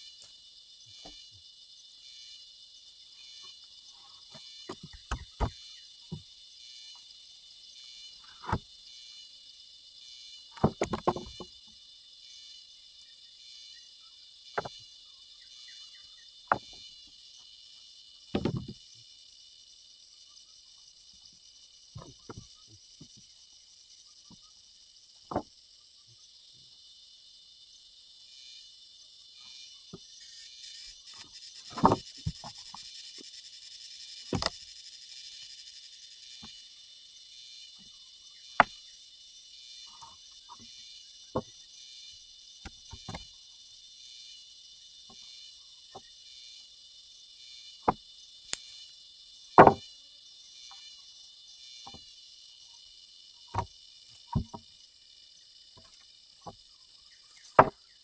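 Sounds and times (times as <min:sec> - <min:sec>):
high-pitched insect buzz: 0:00.0 - 0:58.0
sharp knocks and thumps: 0:04.3 - 0:06.2, 0:10.6 - 0:11.5, 0:16.5 - 0:16.8, 0:18.3 - 0:18.8, 0:25.3 - 0:25.5, 0:31.6 - 0:32.7, 0:34.3 - 0:34.6, 0:49.6 - 0:49.8, 0:53.5 - 0:53.7, 0:54.3 - 0:54.6, 0:57.6 - 0:57.8.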